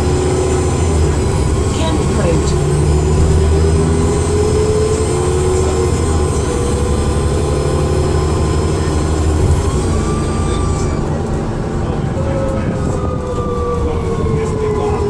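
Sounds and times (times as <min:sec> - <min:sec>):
bus diesel engine drone: 0:00.0 - 0:15.0.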